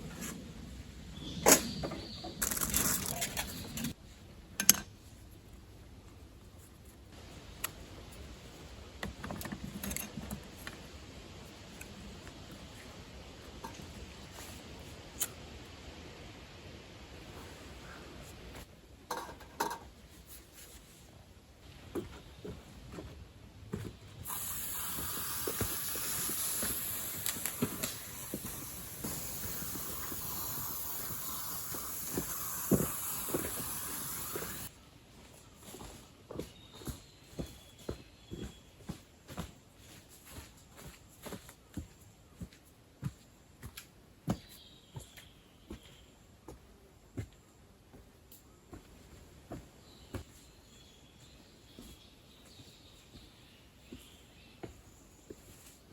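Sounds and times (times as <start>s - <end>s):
camping gear clicking and tapping: 23.7s - 31.2s
steady hiss: 23.9s - 34.8s.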